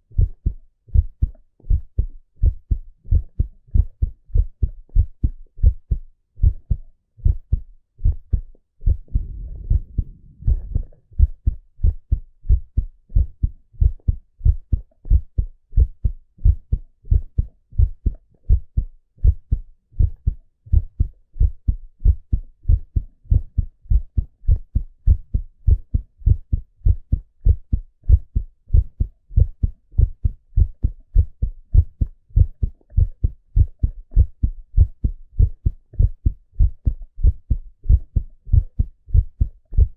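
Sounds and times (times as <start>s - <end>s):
heartbeat through stethoscope: 0.0s - 39.9s
low rushing noise: 8.8s - 11.3s.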